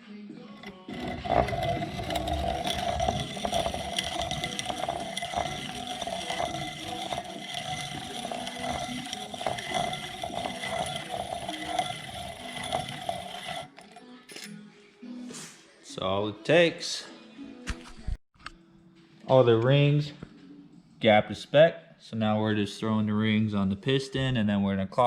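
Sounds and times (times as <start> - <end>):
piston ring grinding: 0.5 - 14.0.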